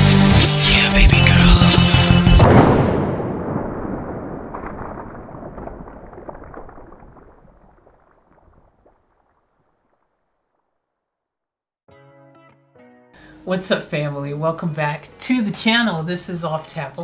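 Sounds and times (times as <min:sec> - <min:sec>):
explosion crackling rumble: 0:00.8 - 0:10.1.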